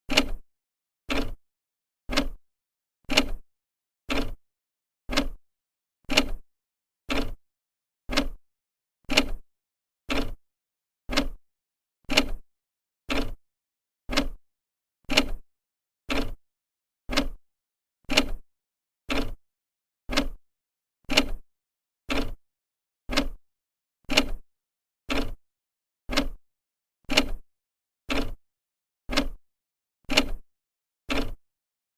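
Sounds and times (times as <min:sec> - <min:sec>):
clock ticking: 0:02.1 - 0:02.4, 0:05.1 - 0:05.4, 0:08.1 - 0:08.4, 0:10.1 - 0:10.4, 0:11.1 - 0:11.4, 0:13.1 - 0:13.4, 0:14.1 - 0:14.4, 0:17.1 - 0:17.4, 0:20.1 - 0:20.4, 0:23.1 - 0:23.4, 0:26.1 - 0:26.4, 0:28.1 - 0:28.4, 0:29.1 - 0:29.4, 0:31.1 - 0:31.4.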